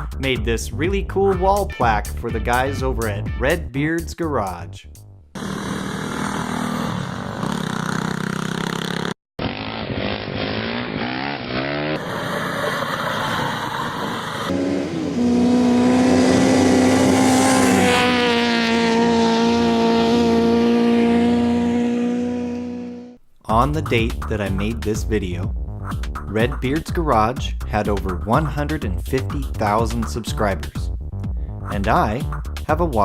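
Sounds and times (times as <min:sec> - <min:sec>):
engine revving: 0:05.3 - 0:23.2.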